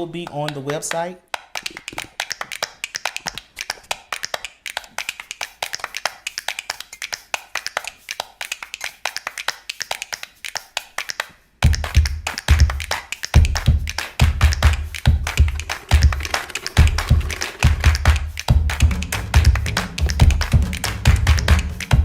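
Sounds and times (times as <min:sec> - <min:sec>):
whisk clicking against a bowl: 0:00.0 - 0:18.8
music with heavy bass beat: 0:11.7 - 0:22.0.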